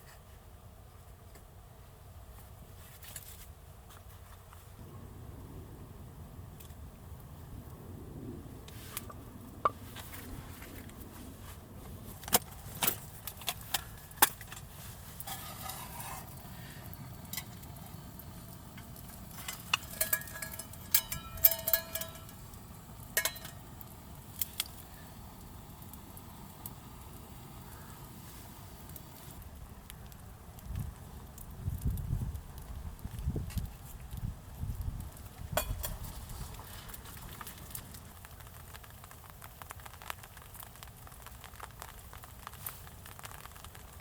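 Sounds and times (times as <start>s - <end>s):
metal cookware clinking: 19.4s - 22.4s, 23.2s - 23.6s.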